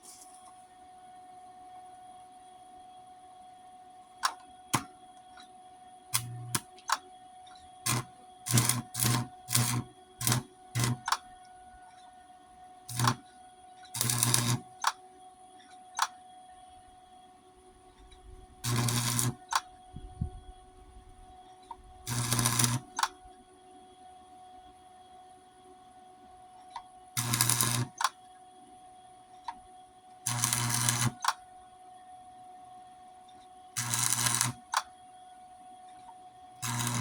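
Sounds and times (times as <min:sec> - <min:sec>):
electric welder crackle and buzz: 0:04.2 - 0:04.9, 0:06.2 - 0:07.0, 0:07.8 - 0:11.2, 0:12.9 - 0:13.3, 0:14.0 - 0:15.0, 0:18.6 - 0:19.7, 0:22.0 - 0:23.2, 0:27.2 - 0:28.2, 0:30.2 - 0:31.4, 0:33.8 - 0:34.9, 0:36.6 - 0:37.0.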